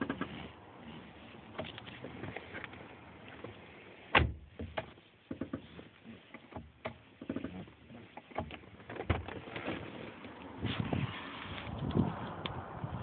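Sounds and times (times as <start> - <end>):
clutch pedal creaking: 0.0 - 0.5, 4.5 - 9.9.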